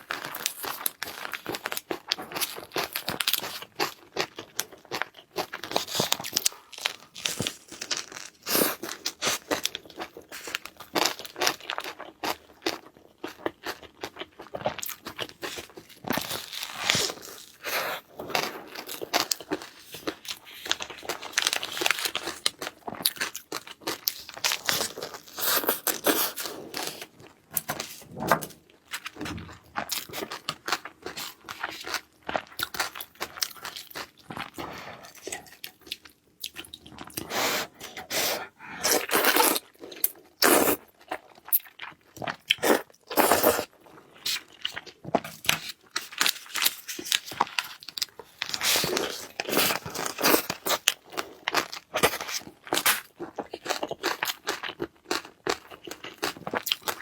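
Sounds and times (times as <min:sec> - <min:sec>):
person chewing and crunching food: 0:00.0 - 0:57.0.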